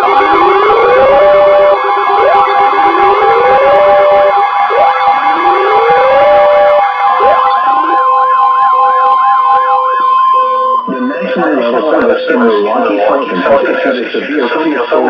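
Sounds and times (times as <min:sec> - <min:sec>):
siren sweeps: 0:00.0 - 0:15.0
steady alert tone: 0:10.8 - 0:15.0.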